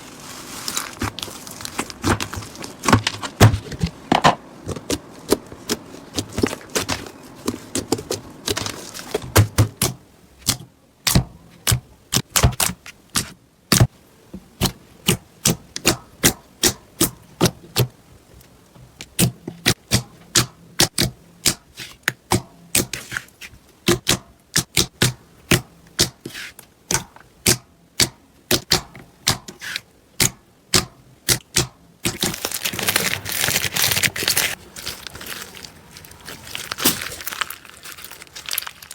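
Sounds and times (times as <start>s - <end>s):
slime crackling: 31.3s - 38.9s.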